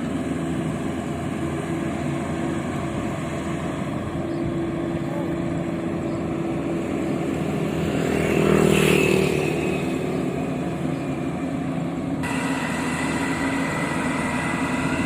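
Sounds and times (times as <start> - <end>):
combine harvester engine running: 0.0 - 15.0
higher hum: 9.5 - 15.0.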